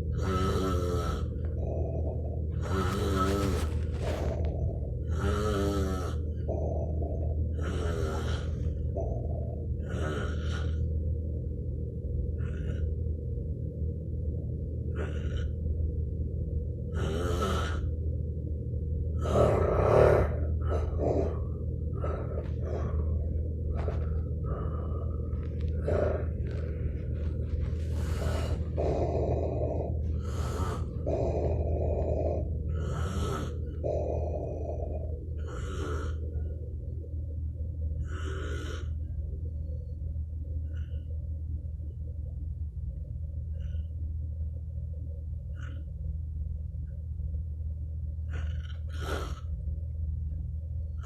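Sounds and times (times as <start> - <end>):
steady low hum: 0.0 - 51.0
man snoring heavily: 0.1 - 1.3, 2.6 - 3.7, 5.0 - 6.2, 7.5 - 8.6, 17.0 - 17.9, 28.0 - 36.2.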